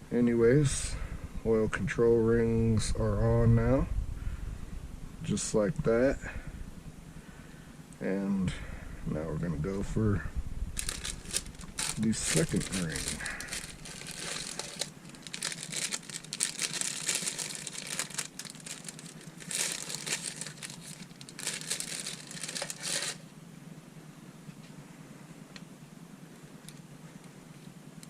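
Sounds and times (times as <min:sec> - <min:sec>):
crinkling and rustling handling: 0:10.8 - 0:23.3.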